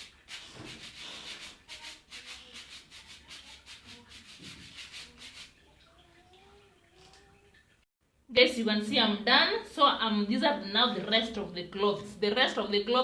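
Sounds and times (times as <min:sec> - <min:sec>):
scrubbing brush rasping on wet fabric: 0:00.0 - 0:05.7.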